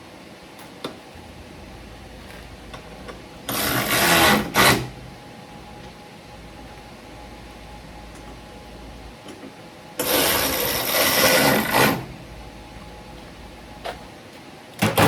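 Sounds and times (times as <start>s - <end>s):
cordless power tool motor: 3.5s - 5.0s, 10.0s - 12.1s.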